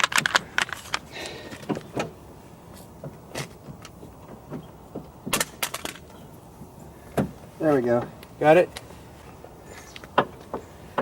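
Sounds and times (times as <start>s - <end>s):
hard parts clicking and knocking: 0.0s - 2.2s, 3.0s - 6.2s, 9.9s - 11.0s.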